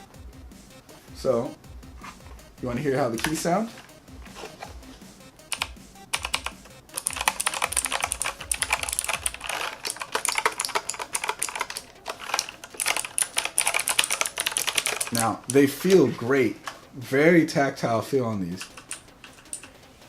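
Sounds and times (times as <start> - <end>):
clicky mechanical keyboard typing: 5.5 - 15.6, 18.6 - 19.8.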